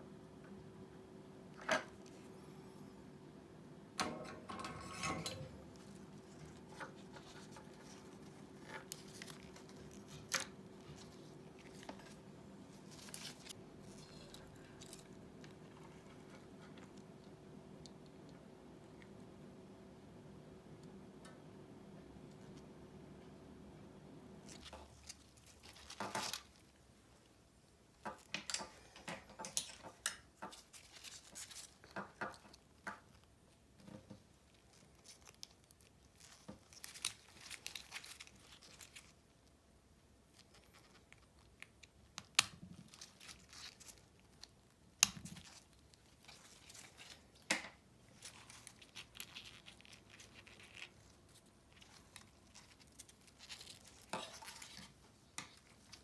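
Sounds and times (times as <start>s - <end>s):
rustling and tearing: 5.6s - 17.0s, 24.4s - 27.3s, 29.6s - 39.6s, 40.2s - 56.0s.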